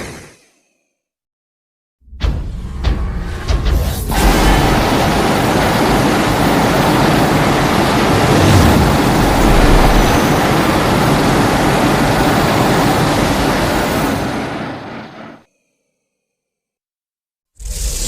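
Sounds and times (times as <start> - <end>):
loud steady rushing noise: 4.1 - 15.4
deep rumble: 8.0 - 11.4.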